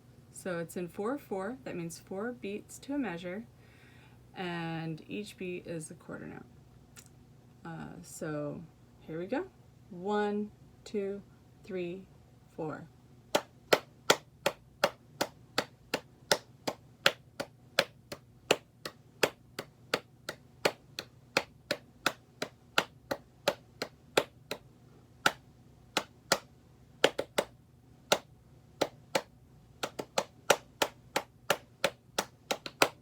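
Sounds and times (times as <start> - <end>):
hand clapping rhythm: 13.3 - 25.4, 26.0 - 33.0.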